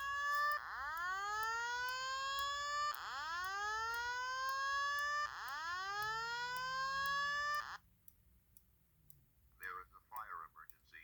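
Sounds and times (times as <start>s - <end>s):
fire alarm whoop tone: 0.0s - 7.8s.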